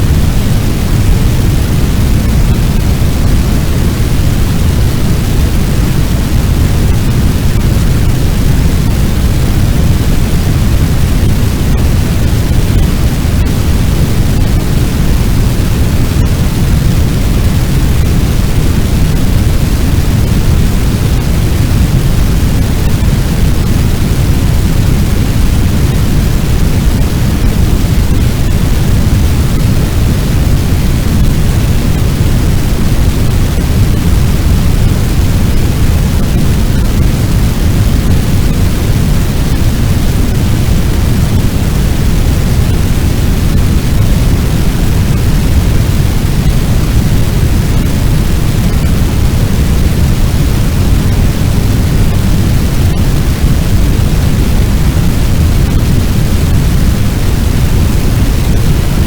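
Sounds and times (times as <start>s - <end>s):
deep rumbling fire: 0.0s - 58.8s.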